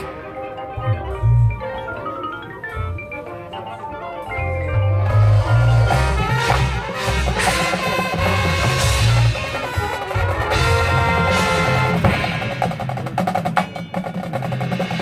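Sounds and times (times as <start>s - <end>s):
brass playing low notes: 4.7s - 12.8s
marching drums: 5.1s - 15.0s.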